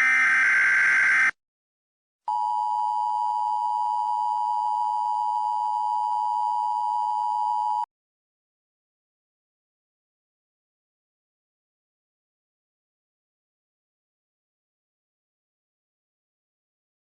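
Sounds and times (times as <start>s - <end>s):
digital header burst: 0.0s - 1.3s.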